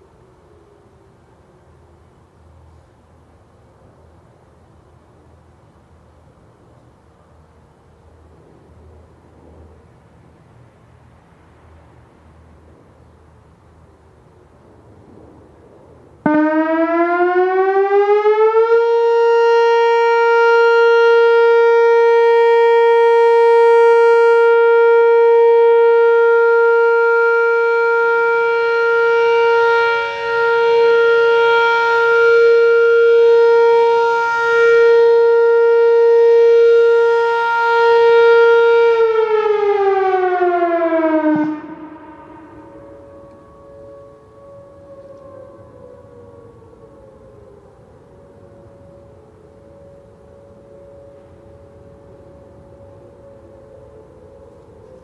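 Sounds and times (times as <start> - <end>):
electronic warning siren: 16.2 - 55.0.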